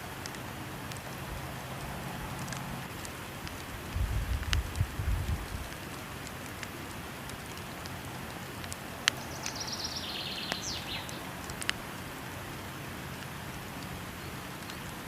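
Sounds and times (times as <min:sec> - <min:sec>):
waterfall rushing: 0:00.0 - 0:03.9
wood fire crackling: 0:00.0 - 0:15.0.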